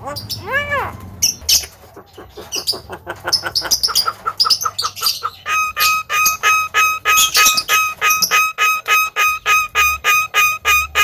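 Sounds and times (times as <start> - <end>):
myna calling: 0.0 - 11.0.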